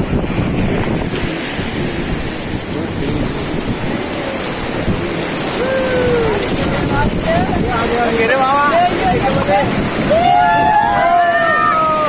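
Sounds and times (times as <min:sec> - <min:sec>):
rushing whitewater: 0:00.0 - 0:12.0
wind buffeting microphone: 0:00.0 - 0:12.0
faint shouts: 0:05.6 - 0:06.5, 0:10.1 - 0:12.0.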